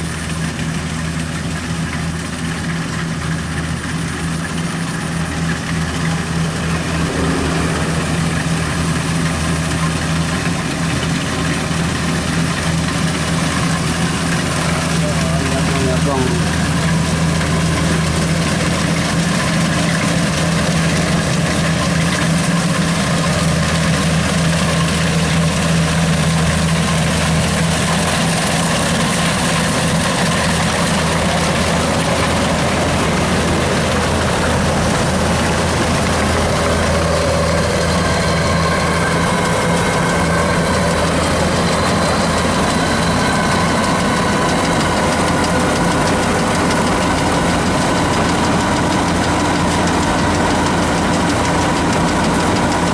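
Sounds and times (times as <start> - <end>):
diesel engine running: 0.0 - 52.9
faint high whine: 5.7 - 10.7.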